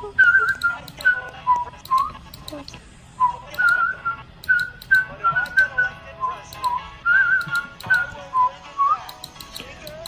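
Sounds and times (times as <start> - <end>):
sharp little clicks: 4.4 - 5.7, 6.5 - 8.1, 9.0 - 10.0.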